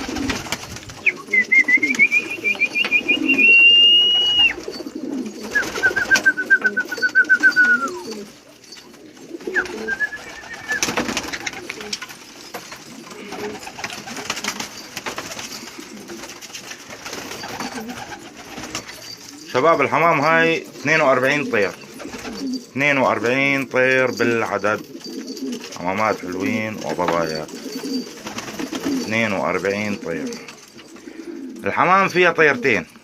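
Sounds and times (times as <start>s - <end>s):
pigeons cooing: 0.0s - 33.0s
high trilled whistles: 1.0s - 4.8s, 5.4s - 8.2s, 9.5s - 11.1s.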